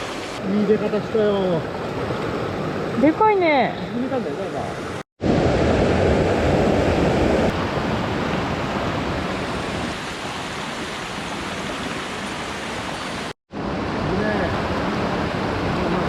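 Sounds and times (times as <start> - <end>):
stream rushing over rocks: 0.0 - 3.2, 4.5 - 16.0.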